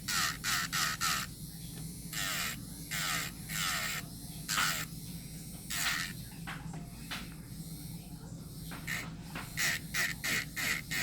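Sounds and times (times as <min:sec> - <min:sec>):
nail drill motor hum: 0:00.0 - 0:06.2, 0:08.6 - 0:11.0
drill bit scraping a nail: 0:00.1 - 0:01.3, 0:02.2 - 0:04.9, 0:05.7 - 0:06.1, 0:08.7 - 0:11.0.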